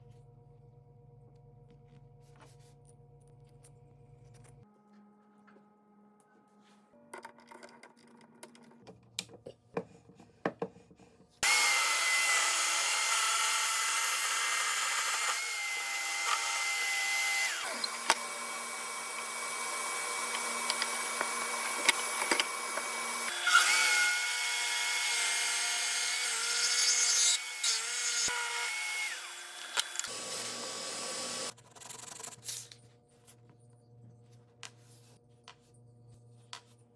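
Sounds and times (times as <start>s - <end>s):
power drill cutting into wood: 11.4s - 31.5s.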